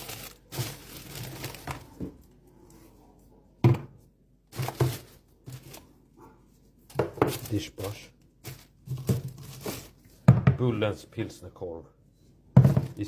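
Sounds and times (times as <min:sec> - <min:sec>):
grocery packaging rustling: 0:00.0 - 0:03.0, 0:04.5 - 0:06.1, 0:06.8 - 0:10.2
knocks on a hard surface: 0:10.3 - 0:10.6, 0:12.6 - 0:13.0.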